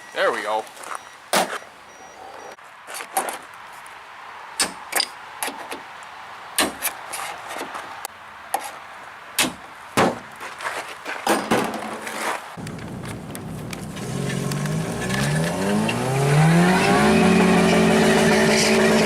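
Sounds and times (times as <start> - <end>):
sharp knocks and clanks: 11.2 - 12.0.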